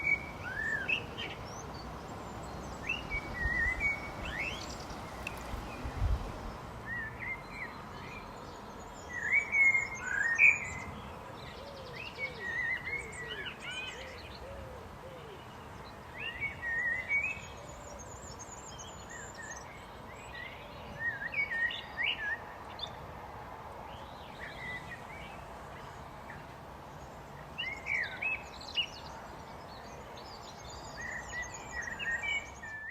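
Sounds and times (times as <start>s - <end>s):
blackbird singing: 0.0s - 23.0s, 27.6s - 32.9s
steady background hiss: 0.0s - 32.9s.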